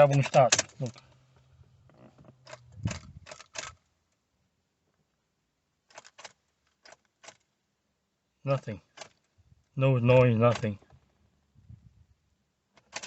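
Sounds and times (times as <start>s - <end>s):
car keys jangling in ignition: 0.0s - 1.1s.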